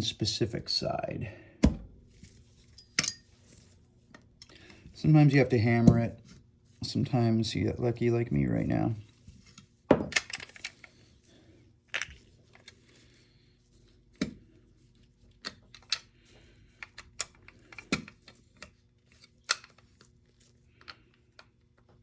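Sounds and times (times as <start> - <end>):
rifle parts clicking and knocking: 9.9 - 10.9, 15.3 - 16.1, 16.8 - 19.9.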